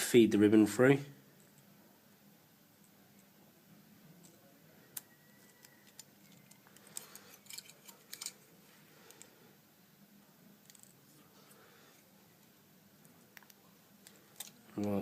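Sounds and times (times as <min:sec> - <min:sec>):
low room hum: 0:00.0 - 0:15.0
small clicks of phone parts: 0:05.0 - 0:08.4, 0:13.0 - 0:15.0.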